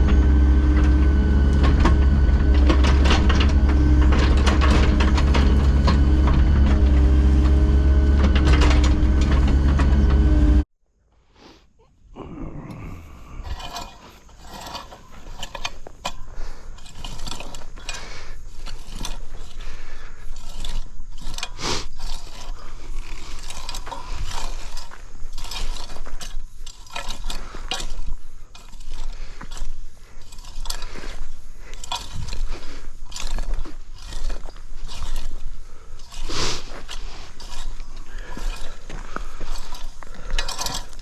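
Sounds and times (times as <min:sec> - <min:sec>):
metal clanking and rattling: 0:00.0 - 0:10.6, 0:13.5 - 0:41.0
diesel machine engine running: 0:00.0 - 0:10.7.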